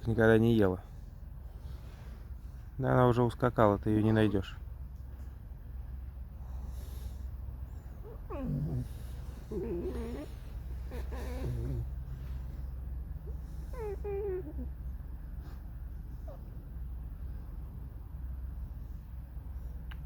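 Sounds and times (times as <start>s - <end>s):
fox whining calls: 8.0s - 12.0s, 13.2s - 14.8s.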